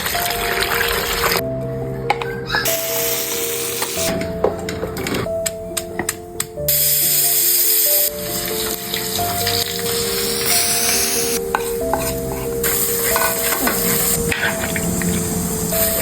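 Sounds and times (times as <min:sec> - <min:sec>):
quiet background music: 0:00.0 - 0:16.0
food sizzling in a pan: 0:02.6 - 0:04.1, 0:06.7 - 0:16.0
stirring in a pan: 0:11.4 - 0:15.3.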